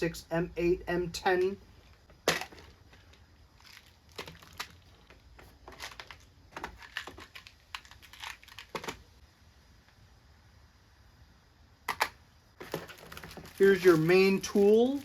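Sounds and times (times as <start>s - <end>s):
case and small parts handled: 1.4s - 9.1s, 11.9s - 15.0s.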